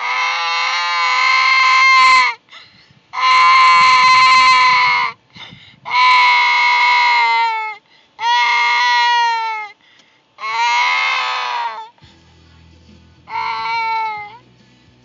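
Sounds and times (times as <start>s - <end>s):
young child wailing: 0.0s - 2.4s, 3.2s - 5.2s, 5.9s - 9.7s, 10.4s - 11.9s, 13.3s - 14.4s.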